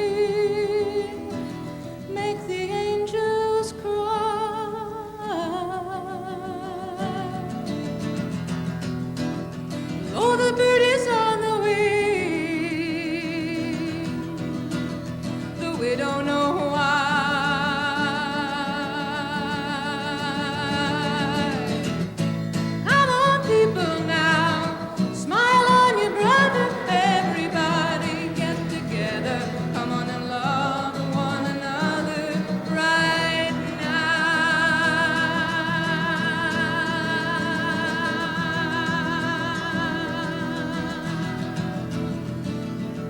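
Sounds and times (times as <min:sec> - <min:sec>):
woman singing with vibrato: 0:00.0 - 0:08.6, 0:09.9 - 0:42.8
acoustic guitar: 0:00.0 - 0:43.0.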